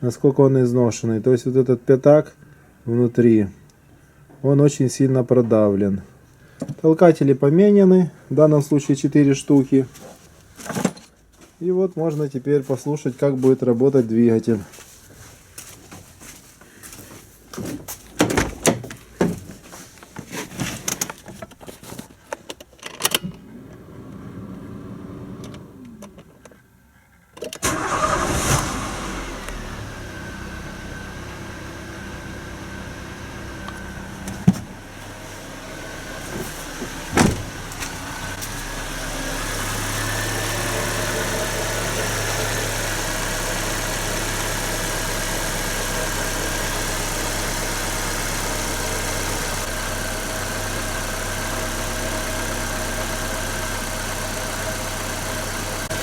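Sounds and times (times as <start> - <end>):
car engine starting and idling: 23.0 - 56.0.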